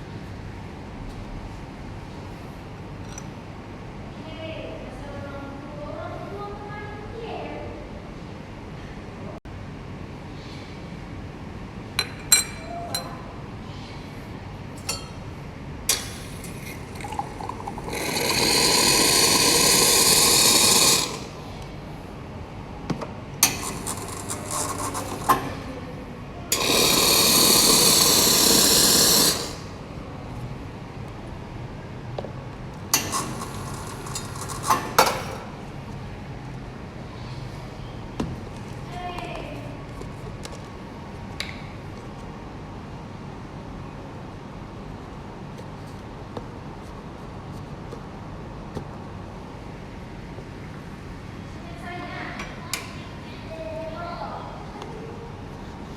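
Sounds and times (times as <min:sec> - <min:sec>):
espresso machine water flushing: 0:15.9 - 0:21.7, 0:23.4 - 0:25.9, 0:26.5 - 0:30.0, 0:32.8 - 0:35.8.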